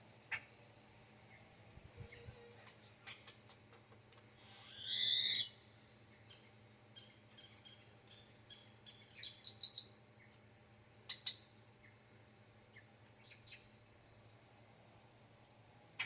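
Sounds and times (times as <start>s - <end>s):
bird chirping: 6.3s - 10.3s, 11.1s - 11.6s.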